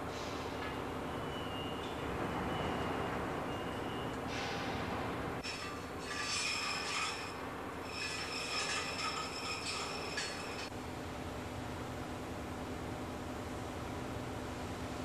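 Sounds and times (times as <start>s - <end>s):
metal scraping and squealing: 5.4s - 10.7s.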